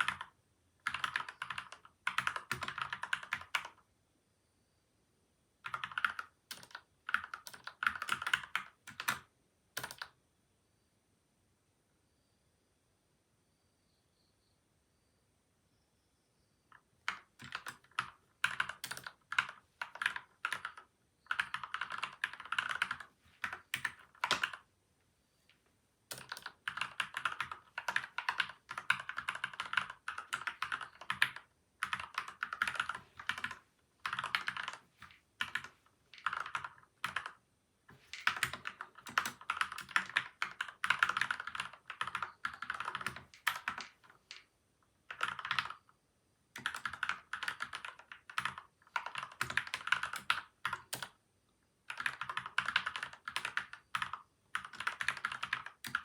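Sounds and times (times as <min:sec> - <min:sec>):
typing on mechanical keyboard: 0:00.0 - 0:03.8, 0:05.6 - 0:10.2, 0:16.7 - 0:24.7, 0:26.1 - 0:44.5, 0:45.1 - 0:46.0, 0:46.6 - 0:51.2, 0:51.8 - 0:56.0.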